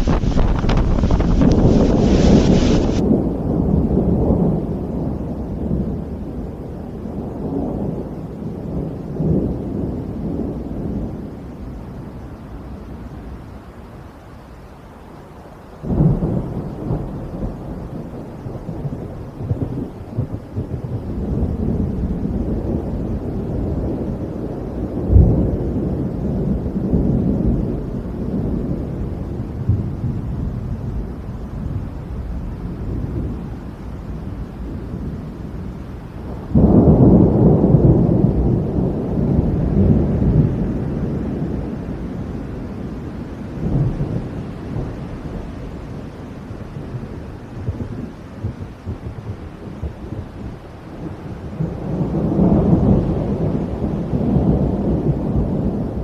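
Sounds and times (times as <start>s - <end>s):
loud rumbling surge: 0.0s - 3.0s
deep storm rumble: 0.0s - 13.9s, 15.7s - 56.0s
rain: 0.0s - 56.0s
strong wind: 0.0s - 56.0s.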